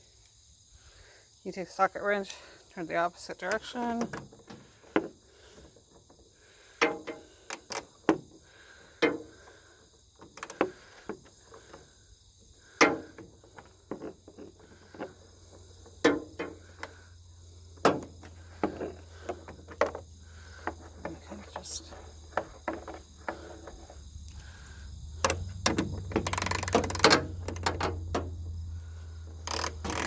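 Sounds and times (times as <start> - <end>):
crickets chirping: 0.0 - 30.0
socket wrench clicking: 25.2 - 28.0, 29.4 - 30.0.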